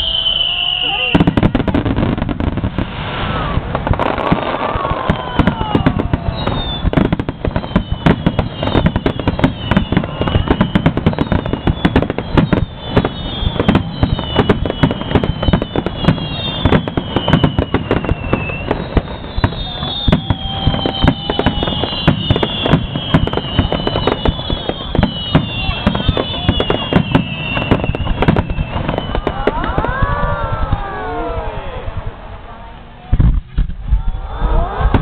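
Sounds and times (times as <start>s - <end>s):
whistling firework shells: 0.0s - 2.2s, 3.1s - 30.1s
fireworks bangs and crackles: 0.0s - 35.0s.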